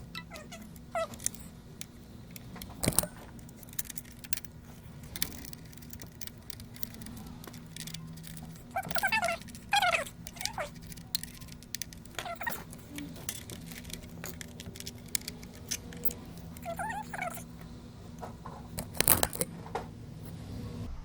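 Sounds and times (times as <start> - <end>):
small metallic clicks and rattling: 0.0 - 19.8
steady low hum: 0.0 - 21.0.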